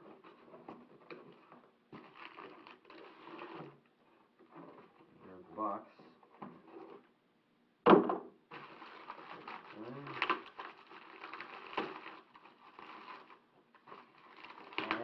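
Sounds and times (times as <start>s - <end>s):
cardboard crackling and rustling: 0.0s - 5.1s, 8.5s - 15.0s.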